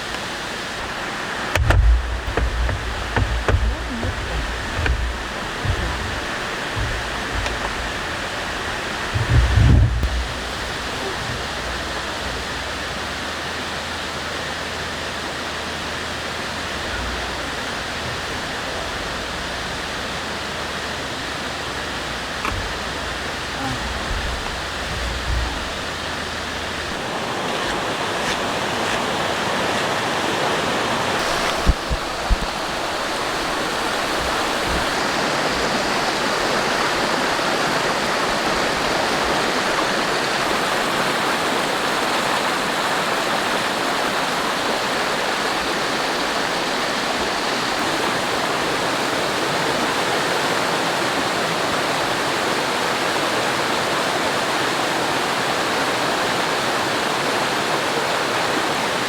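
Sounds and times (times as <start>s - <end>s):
low thumps: 0.0s - 29.0s
mountain stream rushing: 0.0s - 59.0s.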